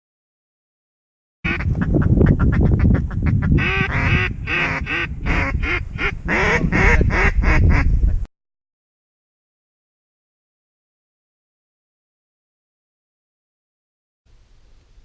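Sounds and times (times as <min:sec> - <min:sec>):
duck quacking: 0:01.5 - 0:07.9.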